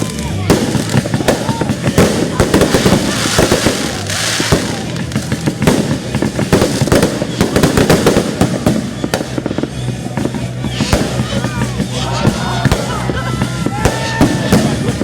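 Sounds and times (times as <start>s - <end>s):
fireworks bangs: 0.0s - 15.0s
fireworks crackling hiss: 0.0s - 15.0s.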